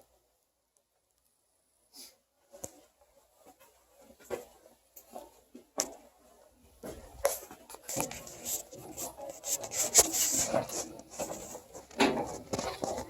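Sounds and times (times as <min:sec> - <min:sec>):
scraping and rubbing: 0:06.8 - 0:13.0.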